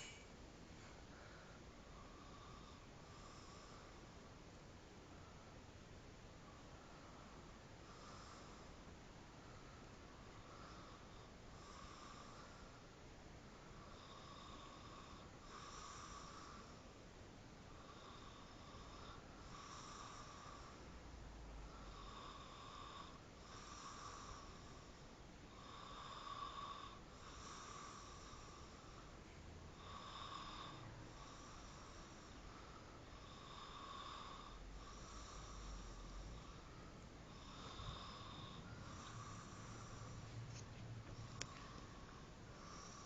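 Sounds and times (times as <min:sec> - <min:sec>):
person snoring faintly: 0:10.4 - 0:12.8, 0:13.7 - 0:16.9, 0:17.8 - 0:20.9, 0:21.6 - 0:43.0.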